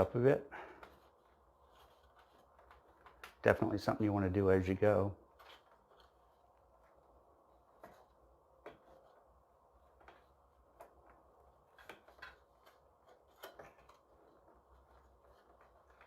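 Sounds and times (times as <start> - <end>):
cables and plastic connectors clicking: 0.8 - 3.8.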